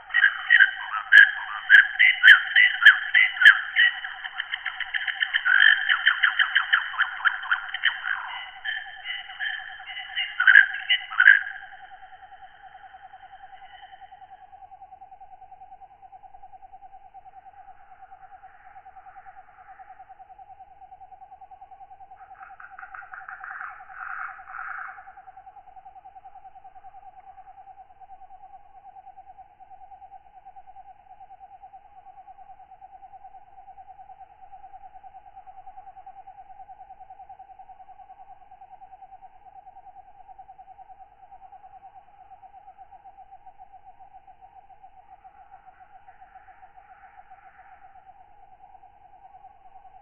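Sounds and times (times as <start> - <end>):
katydid calling: 0.0 - 14.4, 22.2 - 25.5
fast-pulsing insect chorus: 0.0 - 50.0.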